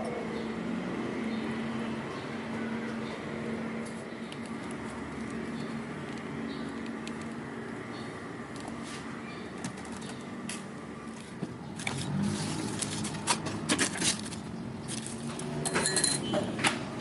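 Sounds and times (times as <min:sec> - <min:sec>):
utensils and glassware clinking: 0:14.9 - 0:16.5.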